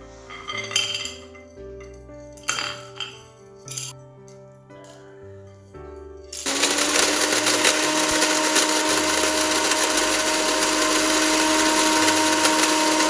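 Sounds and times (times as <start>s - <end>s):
blender grinding spices: 6.4s - 13.0s
blender motor whine: 6.4s - 13.0s.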